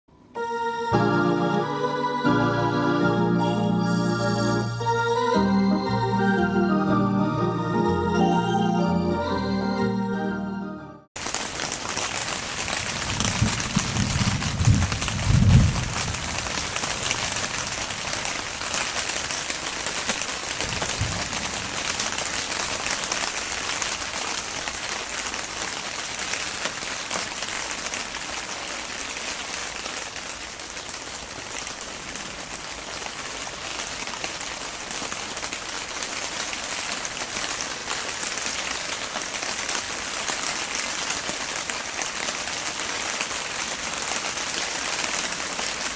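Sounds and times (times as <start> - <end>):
steady rain falling: 11.2 - 45.9.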